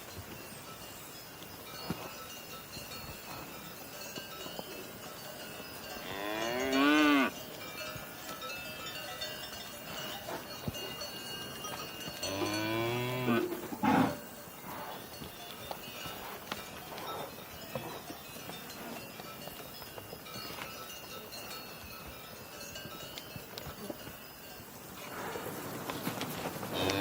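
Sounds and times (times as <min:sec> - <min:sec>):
cows mooing: 0:06.0 - 0:07.4, 0:12.2 - 0:14.2, 0:26.7 - 0:27.0.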